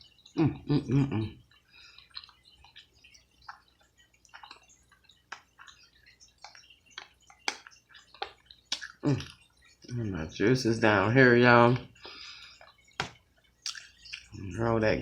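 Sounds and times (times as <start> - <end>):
wet chewing and lip smacks: 1.4 - 9.9, 11.9 - 14.4.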